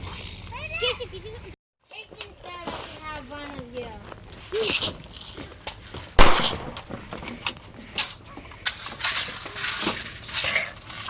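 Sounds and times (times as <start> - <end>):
sharp loud click: 6.2 - 7.0
short clicks: 6.2 - 7.0.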